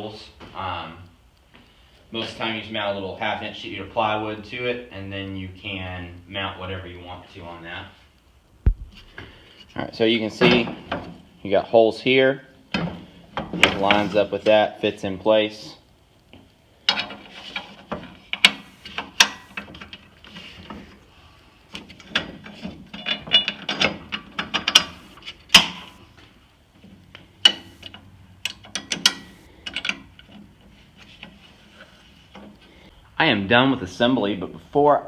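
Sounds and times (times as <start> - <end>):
metallic clicking and clatter: 16.9 - 20.3, 21.8 - 26.0, 27.4 - 31.4.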